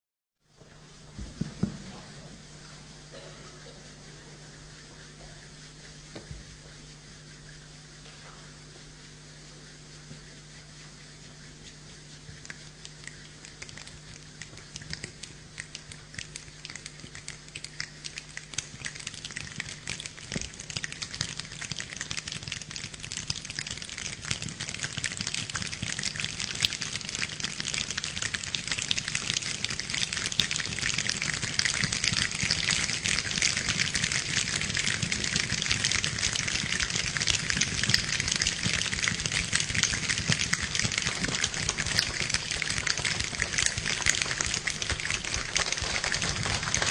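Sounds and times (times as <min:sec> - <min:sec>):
dense rain-like crackling patter: 0:12.3 - 0:46.9.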